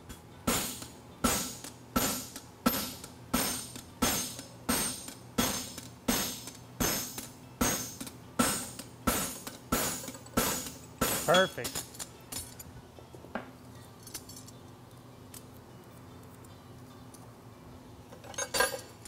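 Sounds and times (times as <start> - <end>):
hammer striking horseshoe on anvil: 0.1 - 11.9.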